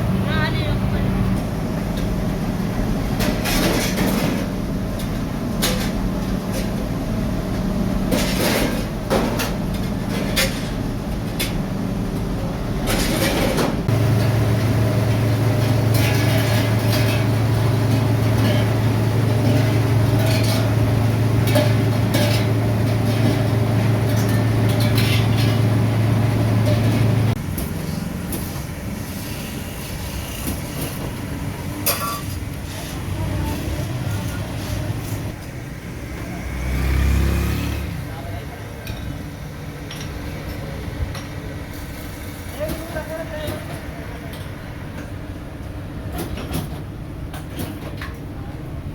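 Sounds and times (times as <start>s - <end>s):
electric machine humming: 13.9s - 16.0s.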